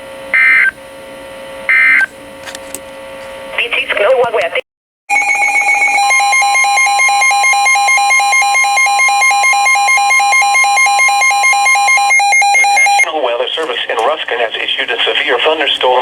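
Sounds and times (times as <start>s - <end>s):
fast pulsing alarm beeps: 5.1s - 13.1s
steady warning tone: 5.1s - 13.1s.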